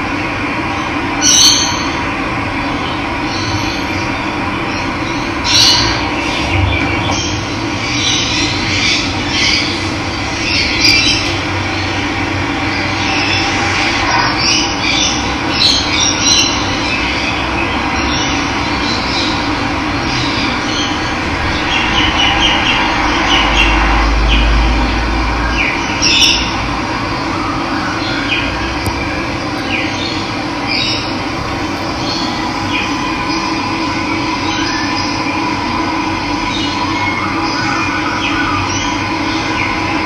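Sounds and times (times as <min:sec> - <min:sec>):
birds chirping: 0:28.0 - 0:35.3
running water rushing: 0:31.1 - 0:34.4.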